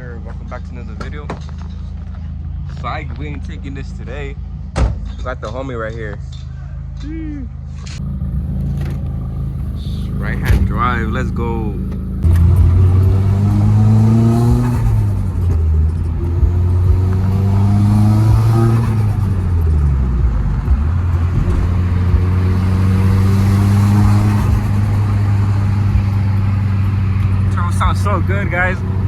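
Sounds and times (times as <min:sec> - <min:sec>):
car engine accelerating hard: 0:07.8 - 0:29.0.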